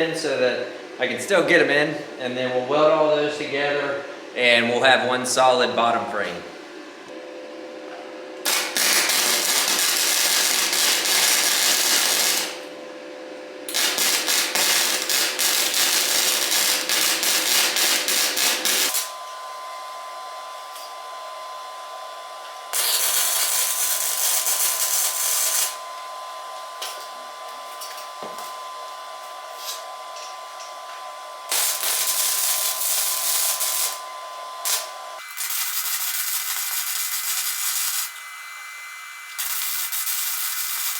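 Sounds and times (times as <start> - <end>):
welder hum: 6.8 - 40.9
arc welding crackling: 8.4 - 12.7, 13.7 - 19.2, 22.7 - 25.8, 31.5 - 38.2, 39.3 - 40.9.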